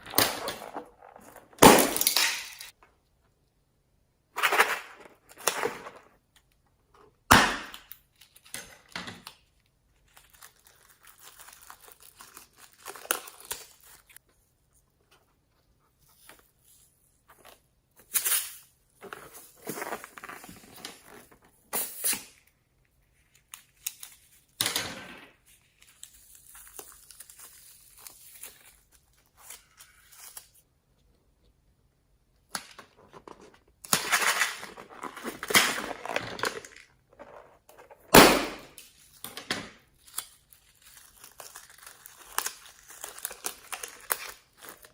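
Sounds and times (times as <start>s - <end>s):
slime crackling and squishing: 39.9s - 44.9s.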